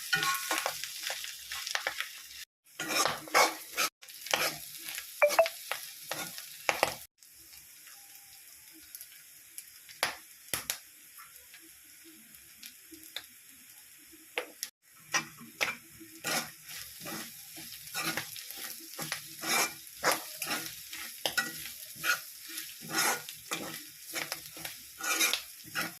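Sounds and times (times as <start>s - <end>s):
clams sizzling in a pan: 0.0s - 26.0s
stirring scraping the pan: 2.7s - 4.6s, 15.0s - 26.0s.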